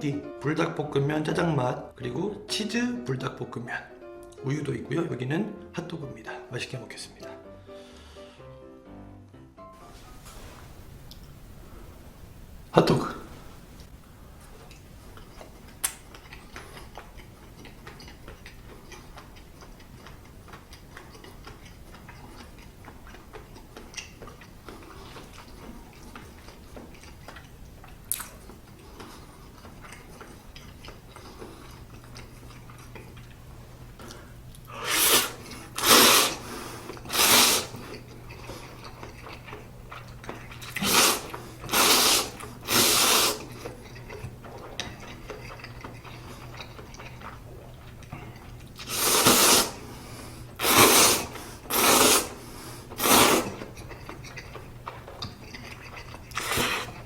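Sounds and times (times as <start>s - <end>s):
wet chewing: 13.7s - 57.0s
mouth clicks: 15.8s - 17.0s.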